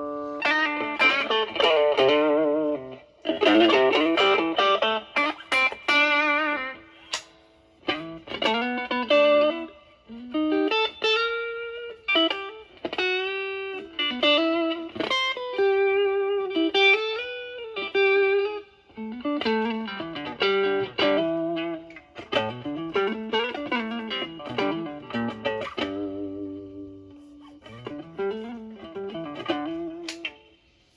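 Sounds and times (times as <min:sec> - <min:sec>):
distorted electric guitar lead: 0:00.0 - 0:07.3.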